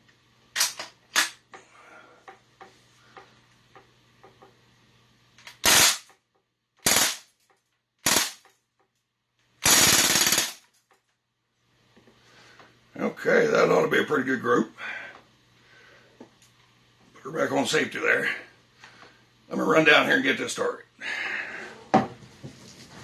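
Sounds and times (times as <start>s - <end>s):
airgun shots: 5.6s - 6.1s, 6.8s - 7.3s, 8.0s - 8.4s, 9.6s - 10.6s
airgun rapid fire burst: 6.8s - 7.2s, 8.1s - 8.4s, 9.6s - 10.6s.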